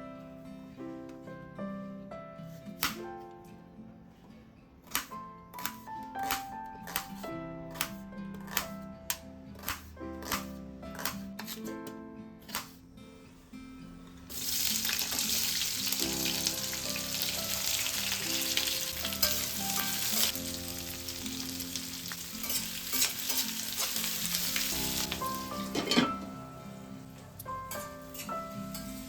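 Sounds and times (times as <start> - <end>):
soft background music: 0.0 - 29.0
food sizzling in hot oil: 14.3 - 26.0.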